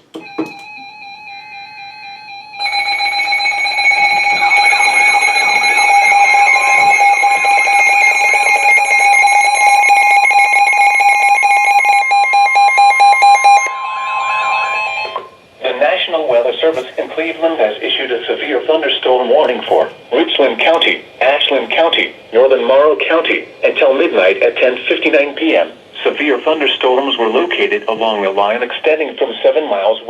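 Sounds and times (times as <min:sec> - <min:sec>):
warbling pulsing alarm tones: 0:00.2 - 0:16.0
steady alarm tone: 0:00.2 - 0:16.6.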